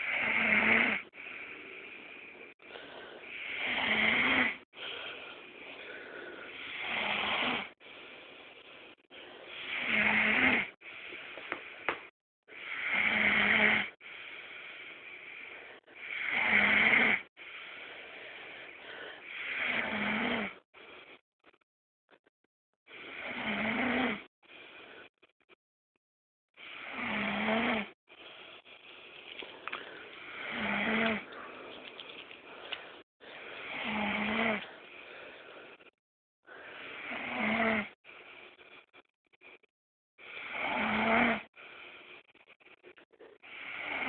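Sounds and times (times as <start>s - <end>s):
loud snores: 0.0s - 1.4s, 3.3s - 4.7s, 6.5s - 7.8s, 9.5s - 10.8s, 12.5s - 14.0s, 15.8s - 17.3s, 19.2s - 20.6s, 22.9s - 24.3s, 26.6s - 28.0s, 30.2s - 31.4s, 33.6s - 34.8s, 36.6s - 38.0s, 40.2s - 41.6s, 43.4s - 44.0s
quiet breaths: 1.0s - 9.9s, 10.6s - 13.0s, 13.9s - 16.4s, 17.2s - 19.9s, 20.5s - 23.4s, 24.2s - 25.6s, 28.0s - 44.0s.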